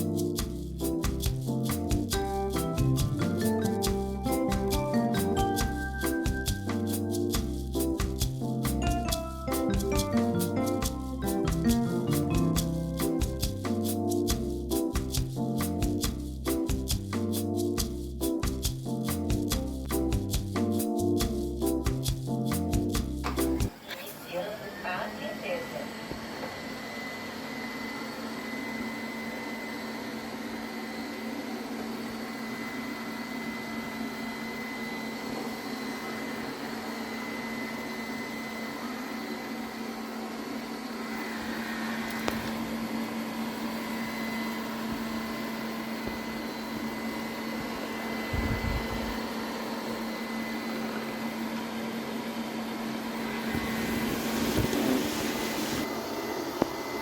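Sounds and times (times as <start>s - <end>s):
robot vacuum cleaner humming: 23.7s - 57.0s.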